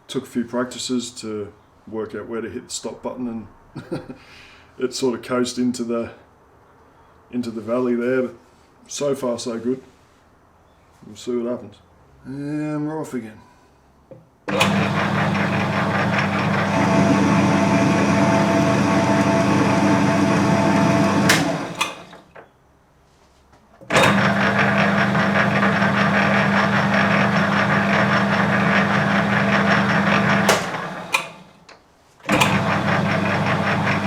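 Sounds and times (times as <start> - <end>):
lathe switch click: 14.5 - 22.2, 30.2 - 31.5
lathe motor hum and gear whine: 14.5 - 22.3, 23.9 - 31.5, 32.3 - 34.0.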